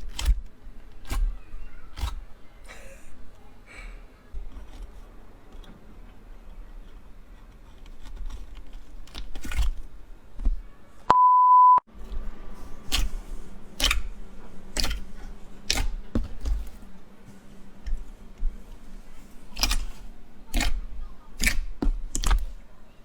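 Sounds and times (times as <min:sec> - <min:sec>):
slime squishing: 0:00.0 - 0:03.5, 0:04.1 - 0:10.8, 0:11.9 - 0:22.9
short electronic beep: 0:11.1 - 0:11.9.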